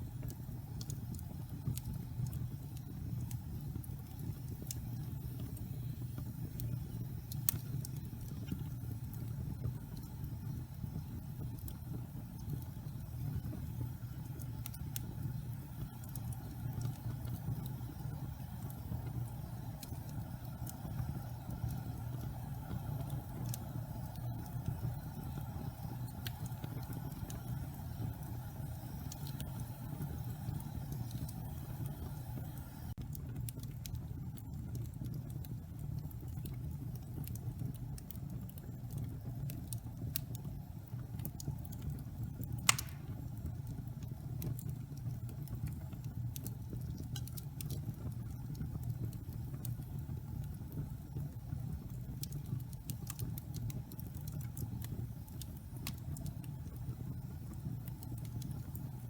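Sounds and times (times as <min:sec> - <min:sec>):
wood fire crackling: 0:00.0 - 0:59.0
sharp loud crack of fire: 0:42.4 - 0:44.6.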